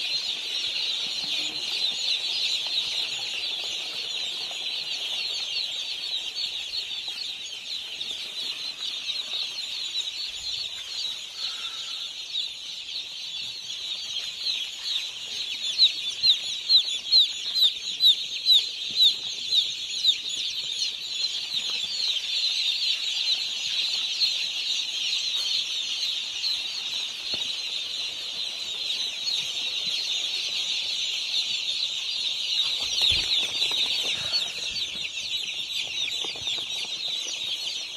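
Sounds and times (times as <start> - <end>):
chicks peeping: 0.0 - 37.9
close chick peeping loudly: 0.2 - 37.9.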